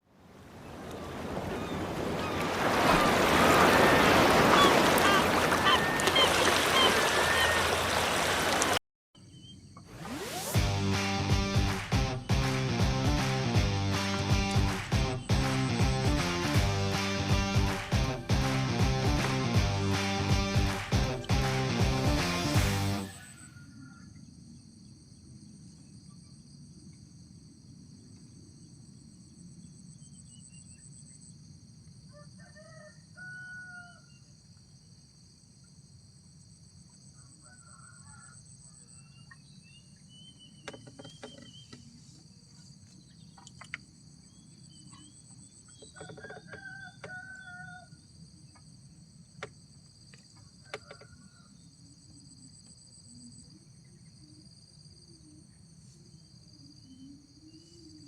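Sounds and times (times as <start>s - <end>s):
rooster crowing: 3.0s - 7.7s, 23.0s - 24.2s, 32.1s - 34.2s, 37.2s - 39.0s, 45.9s - 48.0s, 50.6s - 51.6s.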